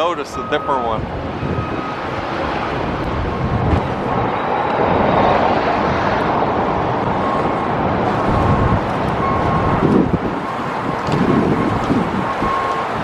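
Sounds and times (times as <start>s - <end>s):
wind buffeting microphone: 0.0s - 13.0s
faint high beep: 0.3s - 2.0s.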